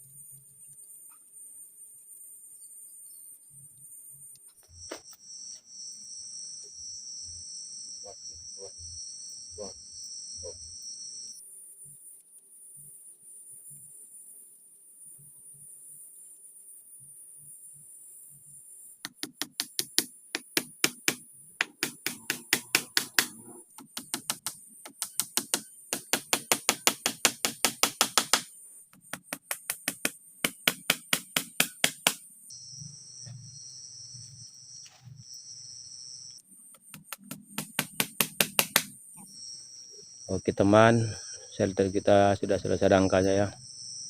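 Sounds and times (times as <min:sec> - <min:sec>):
rapid sharp knocks: 0:19.1 - 0:32.2, 0:36.8 - 0:38.9.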